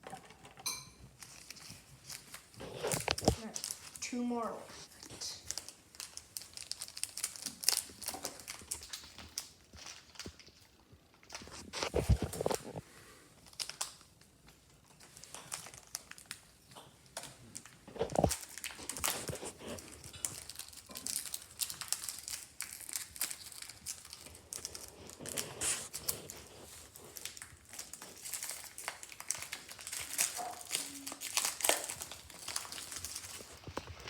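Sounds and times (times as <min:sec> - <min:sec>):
foil pack crinkling: 0:01.1 - 0:12.8, 0:13.4 - 0:34.0.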